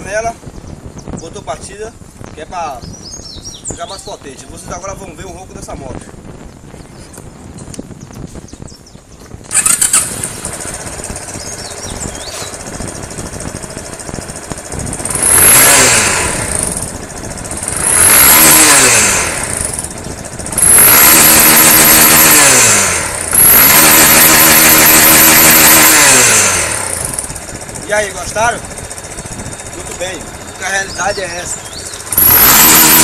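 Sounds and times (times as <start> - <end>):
motorcycle engine revving: 5.6 - 33.0.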